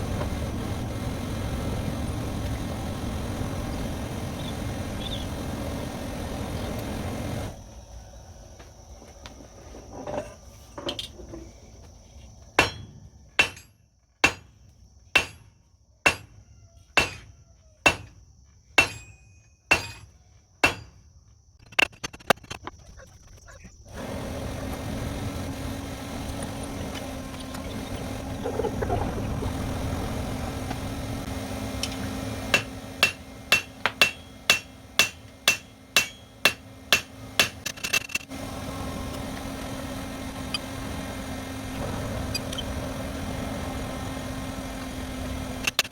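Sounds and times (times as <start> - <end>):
steady hum: 0.0 - 9.5, 23.9 - 45.9
hammer blows on metal: 32.5 - 37.6.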